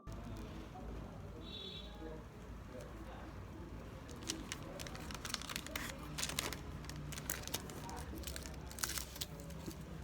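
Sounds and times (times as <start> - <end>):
packaging crinkling and rustling: 3.9 - 10.0.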